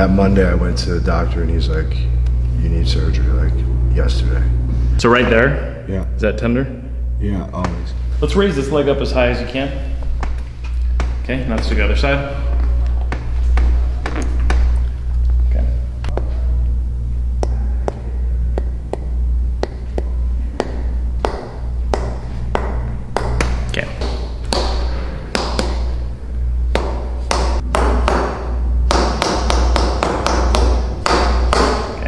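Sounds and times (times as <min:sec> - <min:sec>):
low drone: 0:00.0 - 0:08.2, 0:11.9 - 0:26.7.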